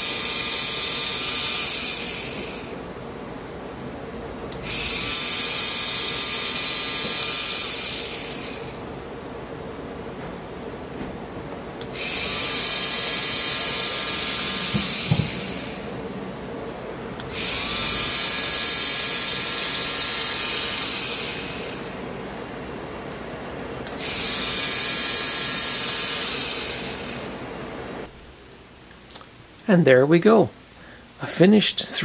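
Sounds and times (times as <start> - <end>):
pen motor and gears whining: 0.0 - 2.8, 4.5 - 8.8, 11.8 - 16.6, 17.2 - 22.0, 23.8 - 27.5.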